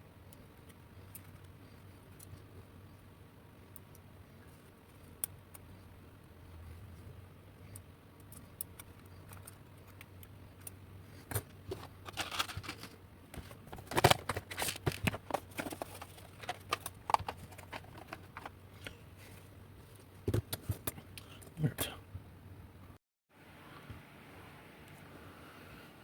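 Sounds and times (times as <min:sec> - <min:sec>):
electronic parts and tools handled: 0:07.7 - 0:21.6.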